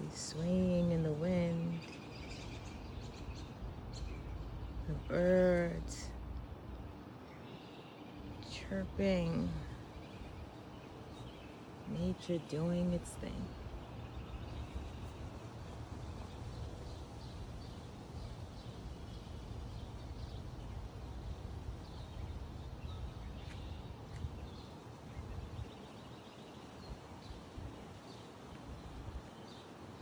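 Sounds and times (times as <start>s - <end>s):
birds chirping: 0.0s - 30.0s
wind rumble on microphone: 8.2s - 29.8s.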